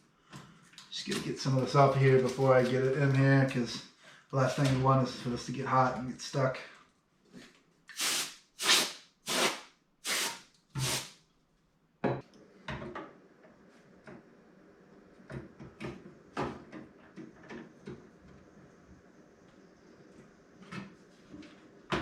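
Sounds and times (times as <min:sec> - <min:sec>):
clicks and rustles of handling: 0:00.3 - 0:03.7.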